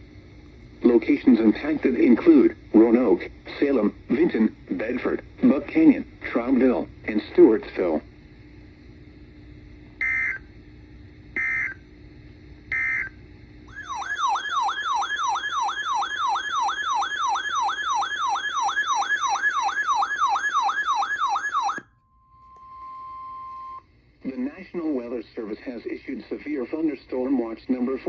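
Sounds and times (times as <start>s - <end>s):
warbling electronic siren alarm: 10.0s - 10.4s, 11.4s - 11.8s, 12.7s - 13.1s, 13.7s - 23.8s.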